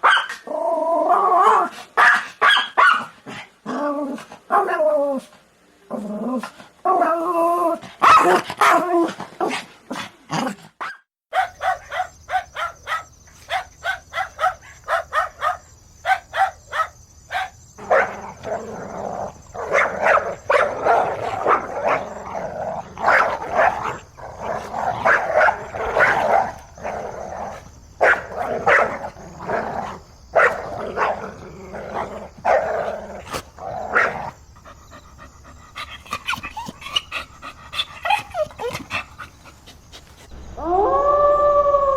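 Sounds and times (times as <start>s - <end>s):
dog barking: 0.0s - 0.4s, 1.4s - 3.1s, 8.0s - 8.9s, 10.8s - 18.2s, 19.6s - 22.2s, 23.0s - 24.0s, 25.0s - 26.5s, 28.0s - 29.0s, 30.4s - 31.2s, 33.9s - 34.2s.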